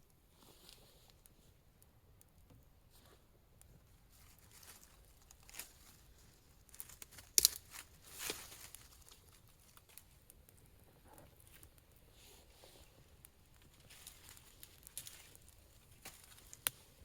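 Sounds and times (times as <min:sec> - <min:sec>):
rustling and crinkling: 0:00.3 - 0:01.6, 0:02.4 - 0:17.0.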